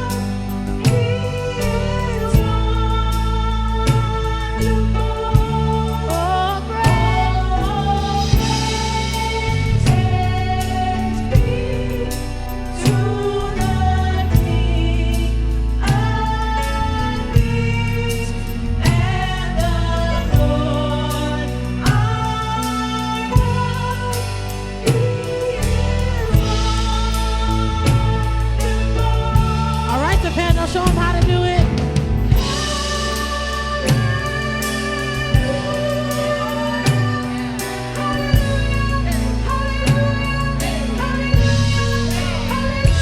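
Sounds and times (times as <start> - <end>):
gospel band music: 0.0 - 43.0
strong drum hits: 6.9 - 12.2, 29.3 - 36.0.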